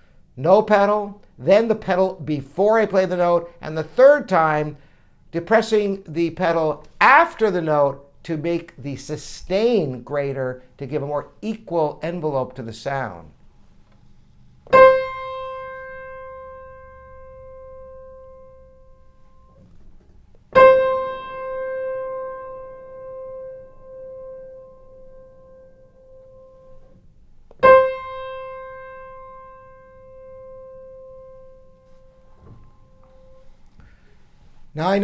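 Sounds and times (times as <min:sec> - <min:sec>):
piano note ringing out: 0:14.7 - 0:19.8, 0:20.5 - 0:27.0, 0:27.6 - 0:33.6.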